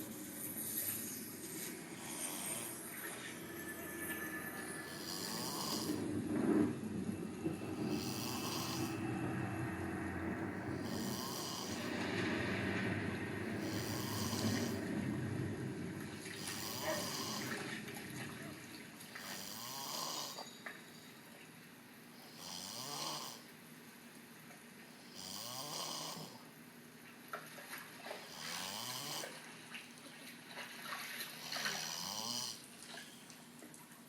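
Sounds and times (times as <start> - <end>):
man snoring: 1.9 - 2.8, 4.8 - 6.1, 7.8 - 9.0, 10.7 - 12.0, 13.5 - 14.9, 16.3 - 17.7, 19.2 - 20.4, 22.2 - 23.5, 25.0 - 26.4, 28.3 - 29.4, 31.4 - 32.6.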